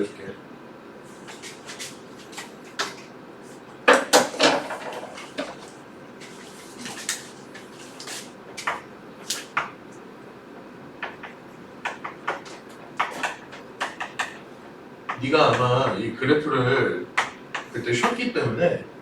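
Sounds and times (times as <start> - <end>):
pen tapping and clicking on surface: 11.0 - 14.4, 17.2 - 18.2.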